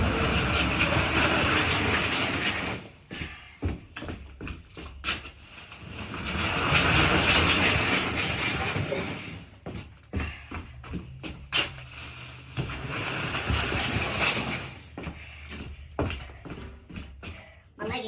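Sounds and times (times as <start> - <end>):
heavy bag scraping across floor: 0.0 - 3.5, 5.3 - 10.4, 11.5 - 15.6.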